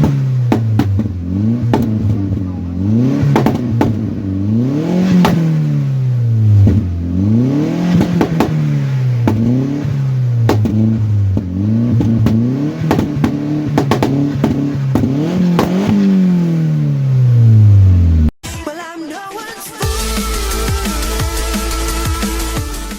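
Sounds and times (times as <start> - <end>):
exhaust pops and crackles: 0.0 - 16.9
car engine revving: 0.0 - 18.3.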